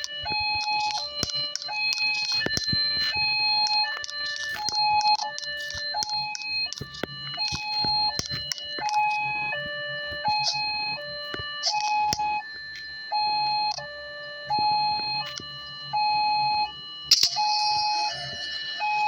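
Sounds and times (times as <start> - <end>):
clicks: 0.0 - 12.9
electronic two-tone siren: 0.0 - 19.0.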